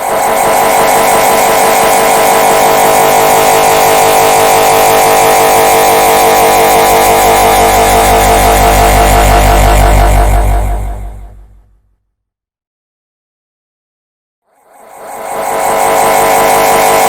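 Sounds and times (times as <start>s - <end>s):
low hum: 4.2s - 11.8s.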